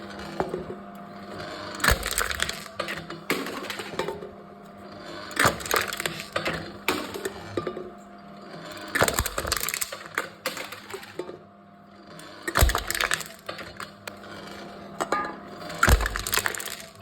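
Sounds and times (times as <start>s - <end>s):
aluminium cans being crushed: 1.8s - 3.9s, 5.4s - 6.4s, 9.0s - 10.9s, 12.5s - 13.9s, 15.8s - 17.0s.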